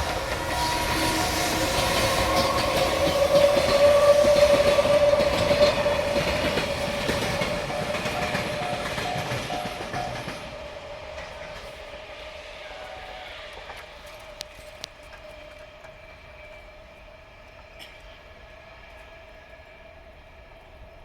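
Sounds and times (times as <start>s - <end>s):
freight train wheels clattering: 0.0s - 16.8s.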